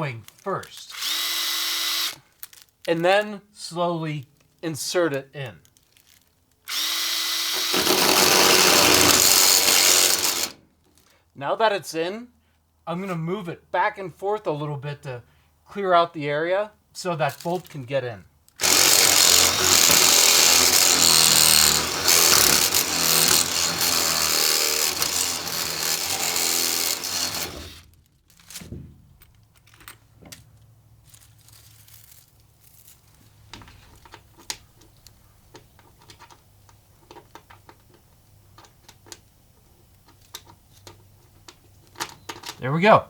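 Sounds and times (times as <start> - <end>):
power drill running: 0.9 - 2.2, 6.7 - 10.6, 18.6 - 27.9.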